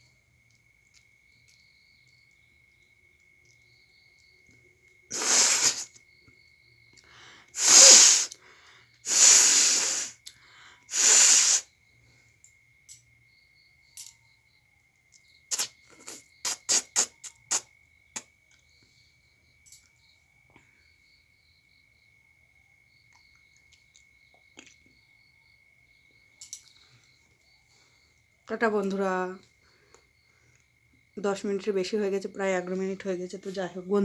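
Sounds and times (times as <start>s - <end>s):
crickets chirring: 0.0s - 34.0s
woman blowing air through nose: 5.1s - 6.0s, 7.5s - 10.2s, 10.9s - 11.7s, 15.5s - 17.6s.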